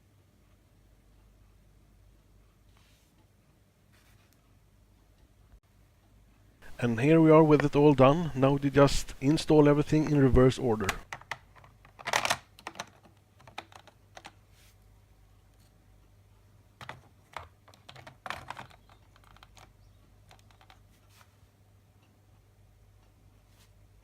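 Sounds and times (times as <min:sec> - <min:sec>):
plastic parts clicking and tapping: 0:10.8 - 0:14.4, 0:16.8 - 0:20.9.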